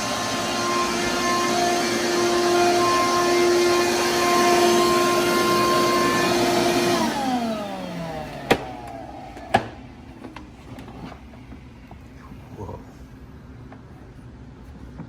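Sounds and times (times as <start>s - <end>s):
shop vac motor whining: 0.0s - 11.5s.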